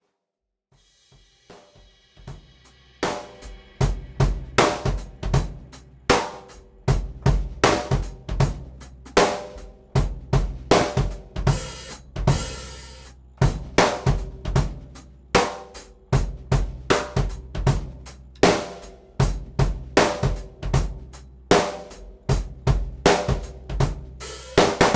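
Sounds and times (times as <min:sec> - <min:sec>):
drum kit groove: 0:00.8 - 0:24.9
cymbal wash: 0:00.9 - 0:05.7.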